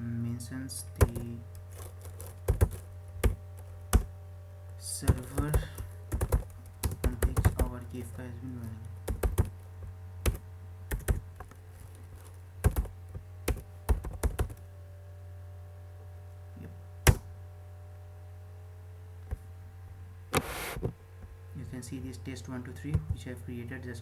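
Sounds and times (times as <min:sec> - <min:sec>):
steady low hum: 0:00.0 - 0:24.0
computer keyboard typing: 0:01.0 - 0:04.1, 0:05.0 - 0:07.9, 0:09.1 - 0:09.5, 0:10.2 - 0:11.2, 0:12.6 - 0:14.6
loud keystroke: 0:05.0 - 0:07.8.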